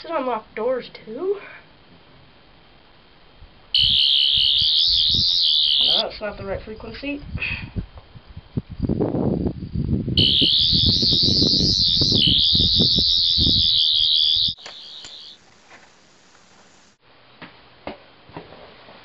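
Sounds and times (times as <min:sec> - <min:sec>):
warbling high-pitched whine: 0:03.1 - 0:06.2, 0:10.2 - 0:17.0.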